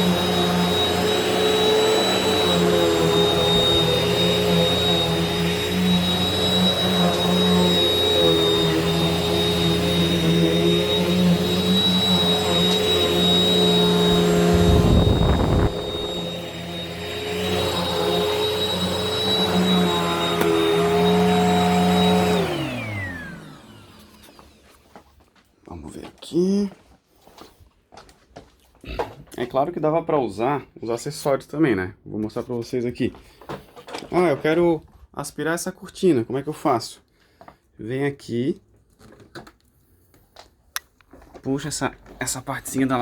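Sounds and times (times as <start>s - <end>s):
vacuum motor winding down: 0.0s - 24.6s
vacuum cleaner running: 0.0s - 25.0s.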